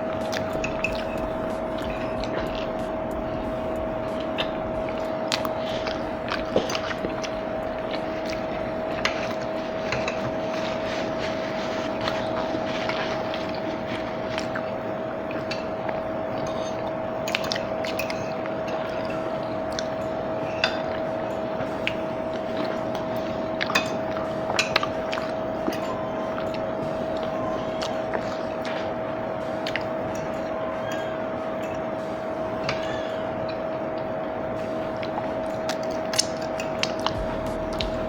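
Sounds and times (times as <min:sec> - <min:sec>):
background hum: 0:00.0 - 0:38.0
chewing and biting food: 0:00.1 - 0:11.3.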